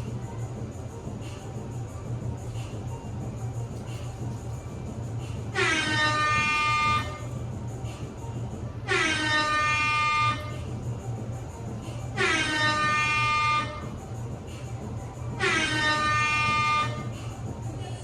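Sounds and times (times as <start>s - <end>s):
air horn blasts: 5.5s - 7.3s, 8.9s - 10.6s, 12.2s - 13.9s, 15.4s - 17.1s.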